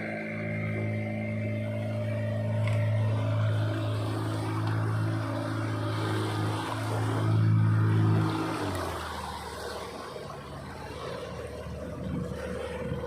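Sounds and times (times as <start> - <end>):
boat engine running: 0.0 - 13.0.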